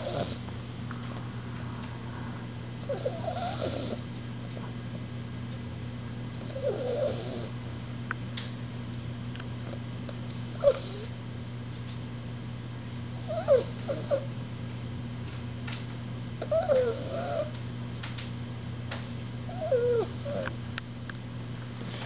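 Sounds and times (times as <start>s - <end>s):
puppy snoring: 0.0s - 0.5s, 2.8s - 4.0s, 6.4s - 7.6s, 10.5s - 11.1s, 13.2s - 14.3s, 16.4s - 17.6s, 19.5s - 20.6s.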